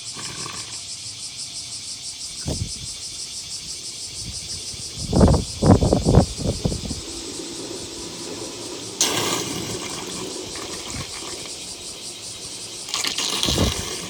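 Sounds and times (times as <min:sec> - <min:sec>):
rainwater flowing into drain: 0:04.3 - 0:14.0.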